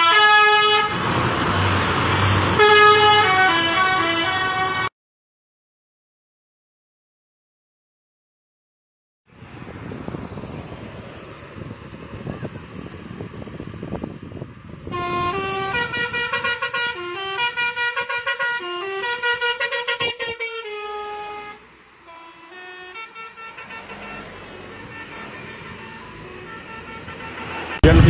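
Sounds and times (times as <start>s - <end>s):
multi-tone musical bus horn: 0.0s - 4.9s, 14.7s - 28.0s
passing traffic rumble: 0.0s - 4.9s, 9.3s - 28.0s.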